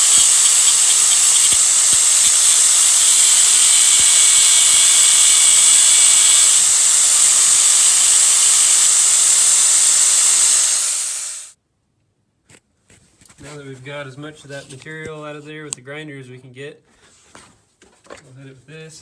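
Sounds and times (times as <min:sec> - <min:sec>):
power grinder grinding metal: 0:00.0 - 0:11.5.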